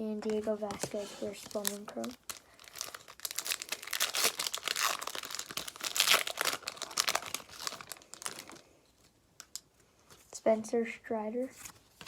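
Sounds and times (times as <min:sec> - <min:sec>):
wrapper crinkling and tearing: 0:01.4 - 0:08.7, 0:09.4 - 0:09.7.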